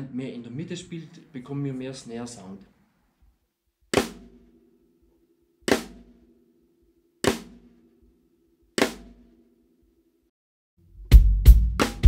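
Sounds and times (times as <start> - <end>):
snare drum rimclick hits: 4.0 - 4.4, 5.7 - 6.2, 7.2 - 7.7, 8.8 - 9.2.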